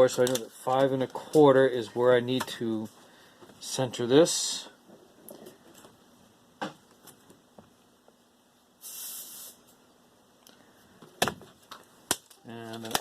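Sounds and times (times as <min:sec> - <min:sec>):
scratchy hiss: 0:08.8 - 0:09.9.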